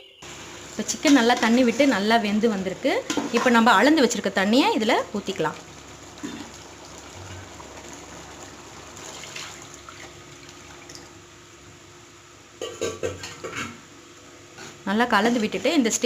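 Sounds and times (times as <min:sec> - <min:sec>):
water pouring into a pot: 0:03.4 - 0:11.3.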